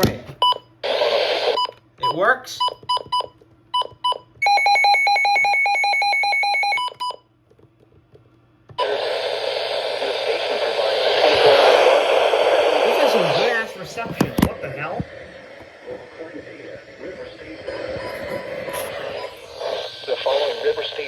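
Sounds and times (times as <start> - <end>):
radio alarm beeps: 0.4 - 7.2, 12.7 - 21.0
radio static hiss: 0.8 - 1.7, 8.8 - 21.0.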